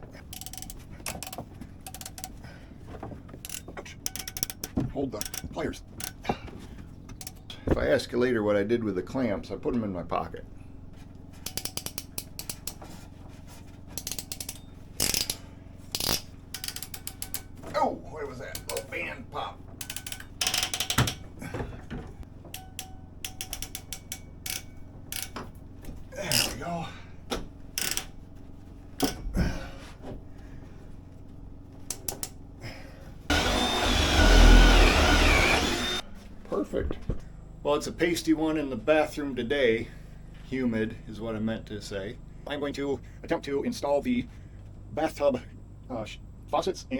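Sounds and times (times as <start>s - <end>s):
ratcheting clicks of clamp tool: 0.2s - 2.4s, 3.4s - 6.2s, 7.2s - 7.5s, 11.4s - 12.8s, 14.0s - 17.6s, 19.8s - 21.2s, 22.5s - 25.4s, 27.8s - 28.2s.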